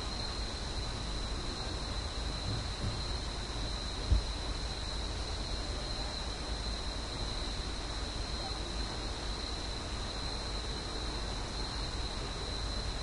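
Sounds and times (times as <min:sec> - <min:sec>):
steady hiss: 0:00.0 - 0:13.0.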